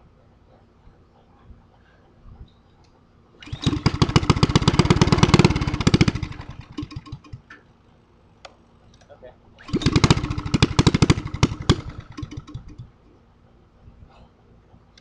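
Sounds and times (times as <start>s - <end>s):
go-kart engine running and sputtering: 3.4s - 7.4s, 9.6s - 12.8s.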